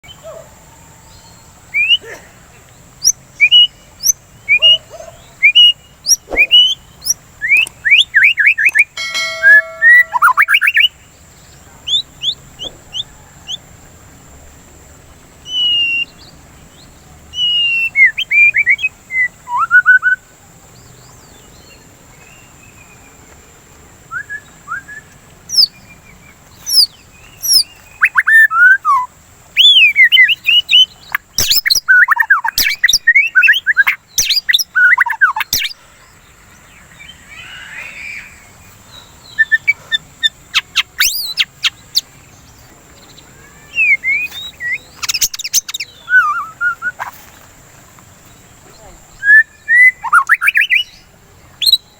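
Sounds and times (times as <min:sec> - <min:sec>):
bird singing whistled notes: 0:01.1 - 0:02.0, 0:03.0 - 0:13.6, 0:15.4 - 0:20.2, 0:24.1 - 0:35.8, 0:36.9 - 0:42.4, 0:43.0 - 0:47.1, 0:48.8 - 0:51.9.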